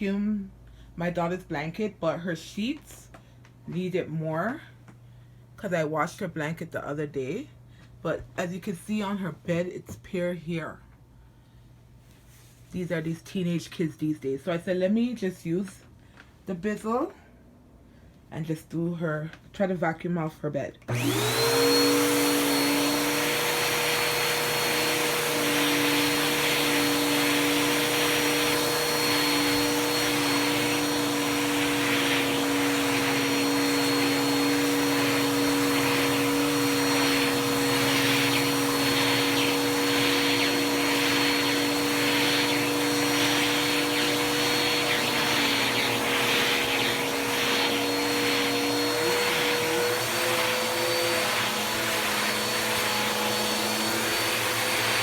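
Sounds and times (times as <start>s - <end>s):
vacuum brush hissing over sheets: 20.9s - 55.0s
vacuum cleaner motor whine: 20.9s - 55.0s.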